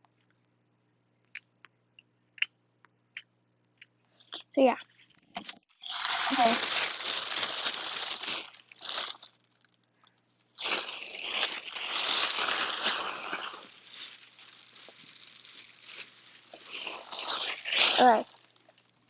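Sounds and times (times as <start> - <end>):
material crinkling and rustling: 4.9 - 9.8, 10.5 - 19.0.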